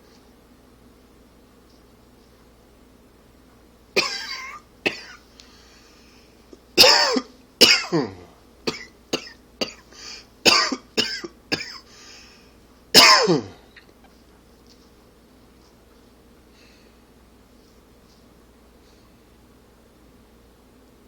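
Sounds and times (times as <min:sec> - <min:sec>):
man coughing: 0:04.0 - 0:05.2, 0:06.8 - 0:11.9, 0:13.0 - 0:13.7.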